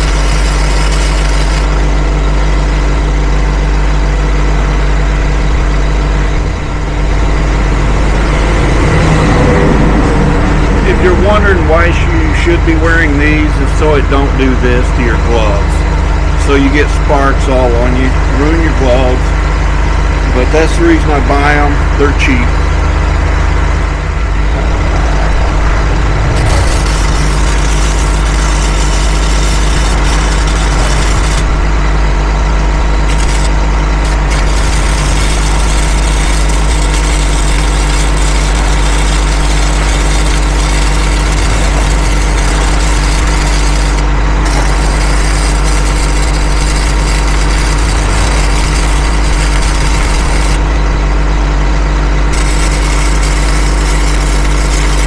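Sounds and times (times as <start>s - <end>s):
welding arc crackle: 0.0s - 2.9s, 26.2s - 50.9s, 52.2s - 55.0s
engine idling: 0.0s - 55.0s.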